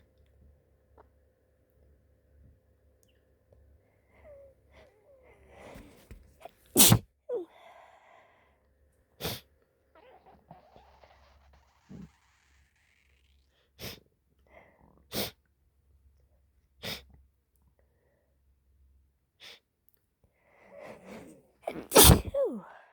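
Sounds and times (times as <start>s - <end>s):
stifled sneezes: 6.8s - 7.4s, 9.2s - 11.5s, 20.7s - 22.9s.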